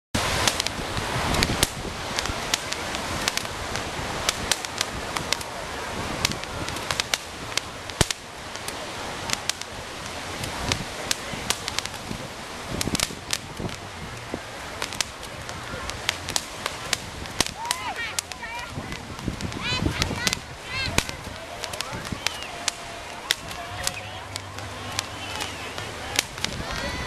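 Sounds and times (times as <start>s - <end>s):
fireworks crackling and popping: 0.2s - 27.0s.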